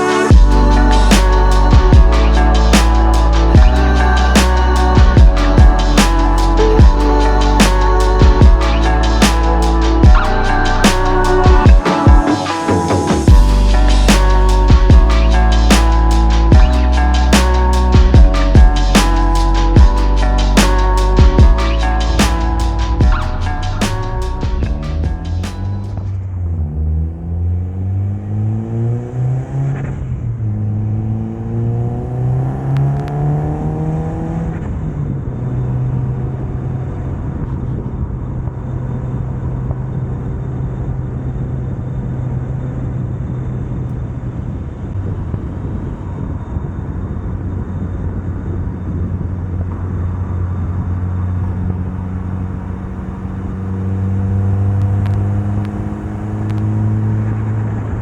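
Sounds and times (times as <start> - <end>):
car engine accelerating hard: 26.3 - 37.2, 49.7 - 58.0.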